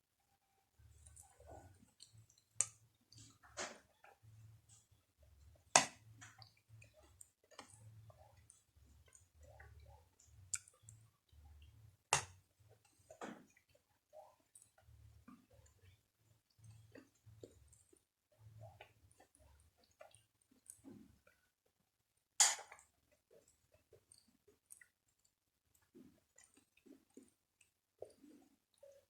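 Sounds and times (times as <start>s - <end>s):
wet chewing: 6.0s - 13.8s.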